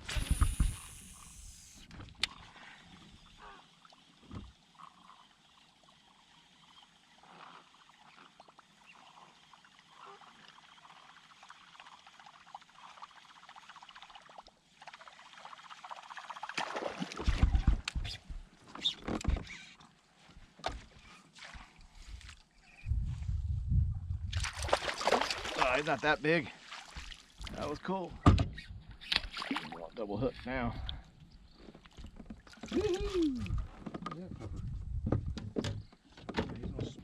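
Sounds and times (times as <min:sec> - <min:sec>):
water against a kayak: 0:00.0 - 0:23.5, 0:24.2 - 0:37.0
splashing: 0:14.3 - 0:17.8, 0:24.3 - 0:27.6, 0:29.2 - 0:30.0, 0:31.9 - 0:33.7
low rumble: 0:22.9 - 0:24.5.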